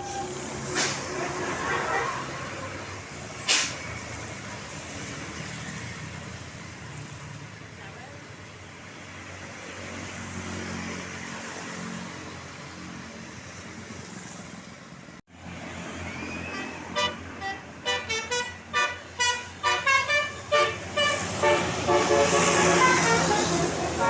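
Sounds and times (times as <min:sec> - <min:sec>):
musical multi-tone bus horn: 0:00.0 - 0:02.8, 0:16.3 - 0:24.0
road traffic: 0:00.0 - 0:24.0.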